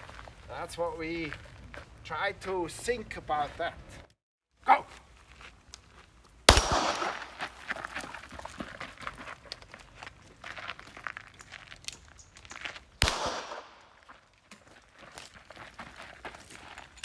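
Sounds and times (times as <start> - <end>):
footsteps and shuffling: 0.0 - 4.1, 7.0 - 13.0, 13.7 - 17.0
pistol shot with echo: 6.5 - 7.4, 13.0 - 13.9.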